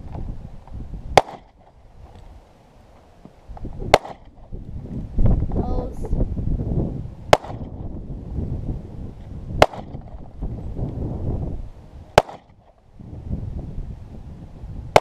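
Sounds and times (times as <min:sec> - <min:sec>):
pistol shots: 0:01.2 - 0:01.6, 0:03.9 - 0:04.4, 0:07.3 - 0:07.8, 0:09.6 - 0:10.1, 0:12.2 - 0:12.6.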